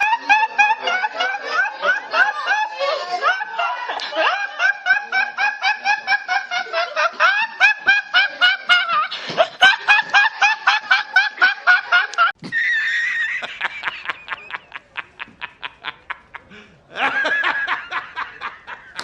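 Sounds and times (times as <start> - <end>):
high-pitched rapid laughter: 10.2 - 14.4.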